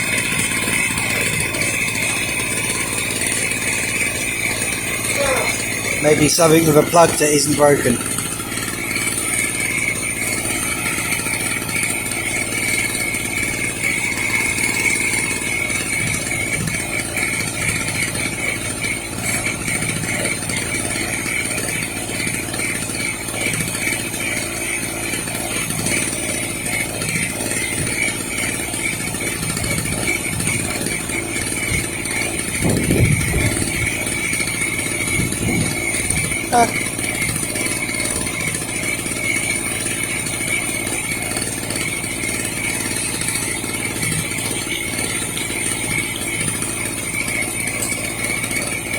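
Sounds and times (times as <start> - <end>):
high whine: 0.0 - 17.8
generator engine running: 0.0 - 48.9.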